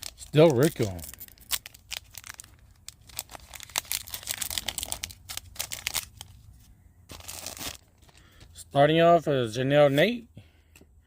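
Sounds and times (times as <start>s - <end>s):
foil wrapper tearing and crinkling: 0.0s - 6.4s, 7.1s - 8.3s.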